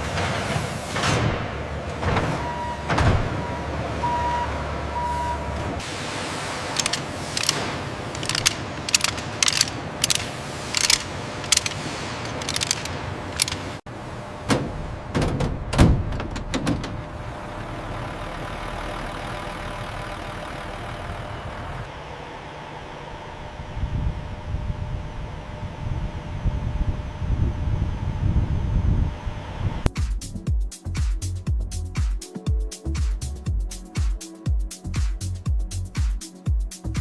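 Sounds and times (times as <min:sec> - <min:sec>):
steady machine hum: 0:03.5 - 0:29.9
machinery clanks and knocks: 0:06.8 - 0:13.8, 0:14.4 - 0:17.2.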